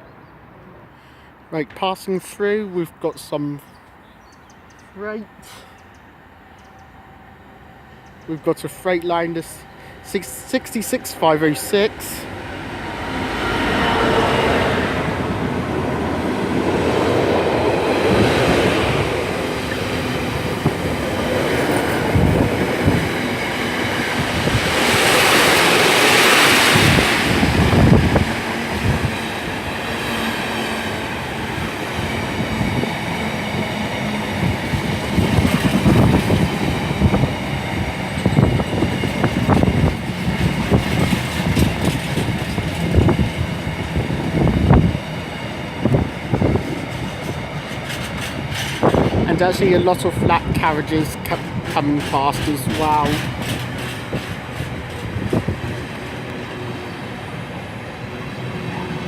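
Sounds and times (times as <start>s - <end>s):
diesel locomotive rumble: 4.2s - 59.0s
wagon wheels clacking on rail joints: 16.9s - 43.6s, 45.9s - 56.2s.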